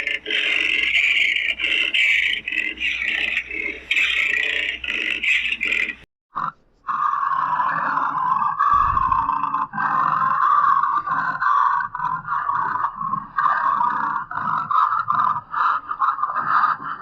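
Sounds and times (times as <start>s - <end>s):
loud monster roars: 7.2s - 17.0s
low rumble: 8.7s - 9.3s.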